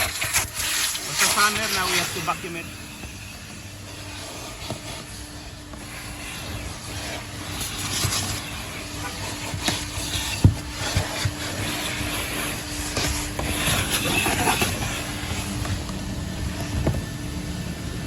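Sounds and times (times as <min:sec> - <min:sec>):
vacuum cleaner suction hum: 0:00.0 - 0:18.0
vacuum nozzle knocking: 0:07.6 - 0:15.0.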